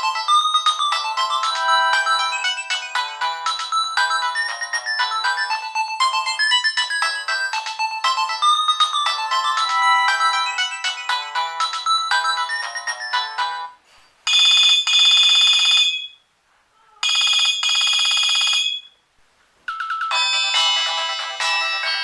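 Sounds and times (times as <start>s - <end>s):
phone melodic ringtone: 0.0s - 16.2s, 17.0s - 18.9s, 19.7s - 22.0s
fast-trilling phone ring tone: 14.3s - 16.2s, 17.0s - 19.0s.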